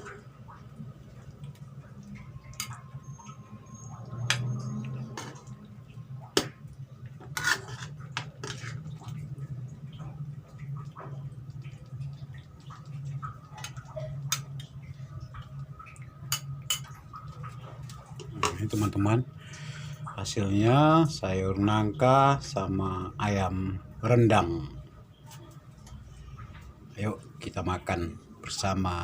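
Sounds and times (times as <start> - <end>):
utensils and dishes clinking: 7.2 - 8.8.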